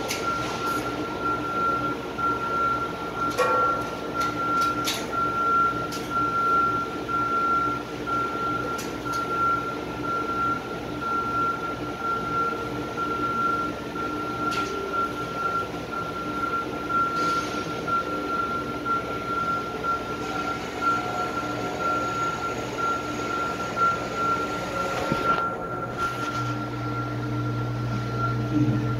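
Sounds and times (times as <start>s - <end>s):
high whine: 20.0s - 28.9s.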